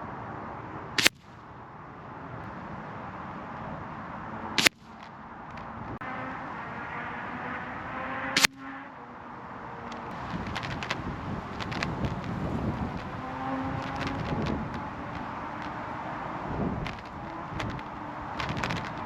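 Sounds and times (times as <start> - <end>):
air rifle shots: 1.0 - 1.4, 4.5 - 5.1
wind noise on microphone: 10.0 - 19.0.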